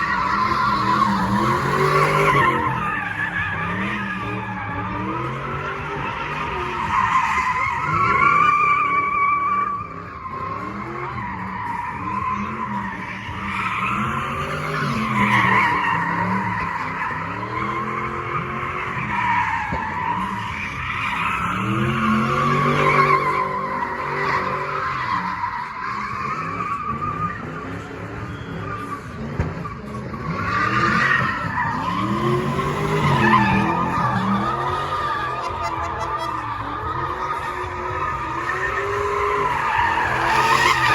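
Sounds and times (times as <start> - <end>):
car engine revving: 0.0 - 40.9
tires squealing: 0.0 - 40.9.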